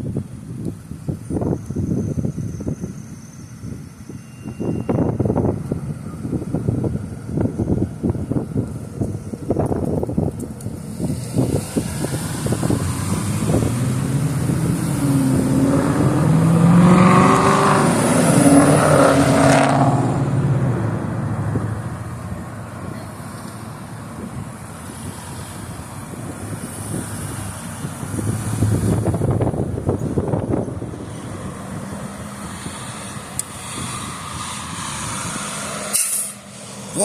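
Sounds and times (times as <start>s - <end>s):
wind rumbling on microphone: 0.0s - 37.0s
vehicle passing by: 10.1s - 37.0s.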